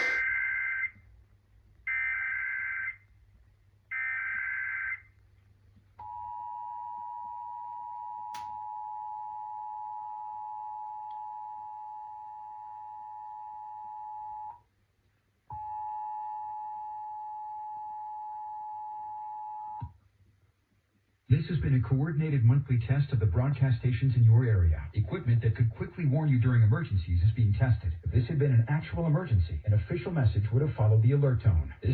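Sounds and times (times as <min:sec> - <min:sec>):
two-tone alert signal: 0:00.0 - 0:00.2.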